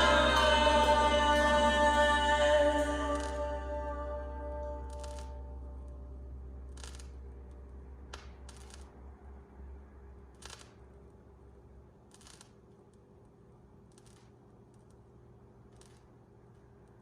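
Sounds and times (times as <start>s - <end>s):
vinyl record pop: 0.0s - 5.4s
vinyl record crackle: 0.0s - 9.0s
low hum: 0.0s - 12.1s.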